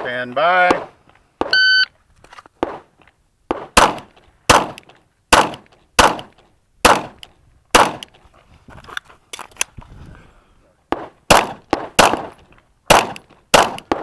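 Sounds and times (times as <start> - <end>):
shot timer beep: 1.5 - 1.9
pistol shots: 3.5 - 8.1, 10.9 - 14.0.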